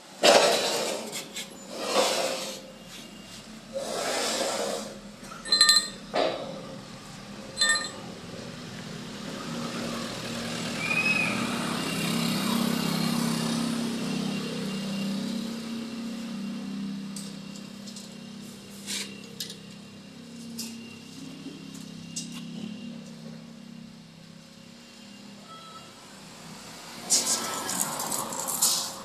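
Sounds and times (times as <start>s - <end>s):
steel parts clinking together: 5.3s - 6.4s, 7.6s - 8.1s.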